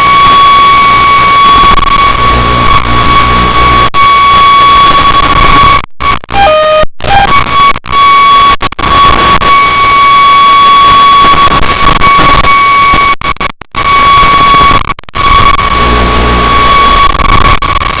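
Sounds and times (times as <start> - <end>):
high-pitched buzz: 0.0 - 13.2, 13.8 - 18.0
loud static hiss: 0.0 - 18.0.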